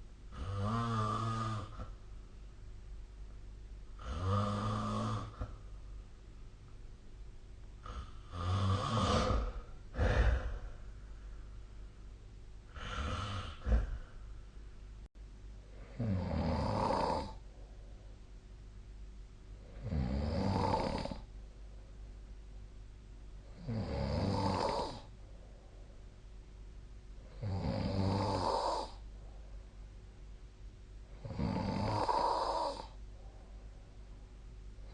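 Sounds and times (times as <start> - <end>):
person snoring: 0.3 - 1.9, 4.0 - 5.6, 7.8 - 10.9, 12.7 - 14.2, 15.7 - 17.4, 19.6 - 21.3, 23.5 - 25.1, 27.3 - 29.0, 31.2 - 33.0.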